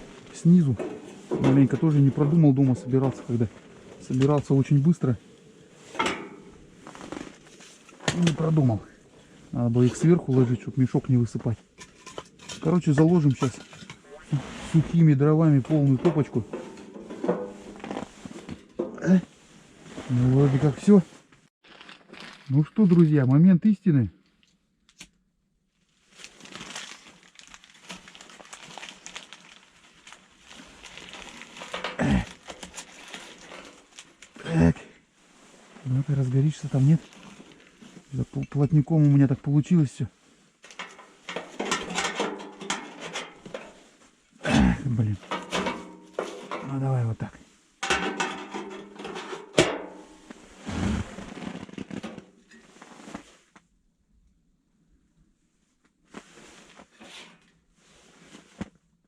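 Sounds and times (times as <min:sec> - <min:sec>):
wood fire crackling: 0:00.0 - 0:22.6, 0:26.2 - 0:34.6.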